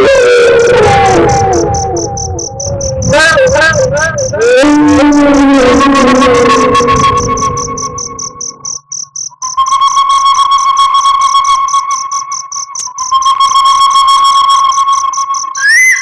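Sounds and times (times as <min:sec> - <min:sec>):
wolf howling: 0:00.0 - 0:08.0
crickets chirping: 0:00.0 - 0:16.0.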